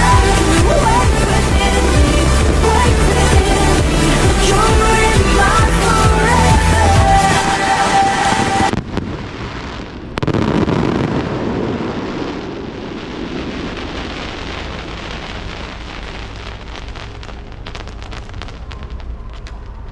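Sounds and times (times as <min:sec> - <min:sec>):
firework burst: 0:00.0 - 0:19.9
fireworks crackling: 0:00.0 - 0:19.9.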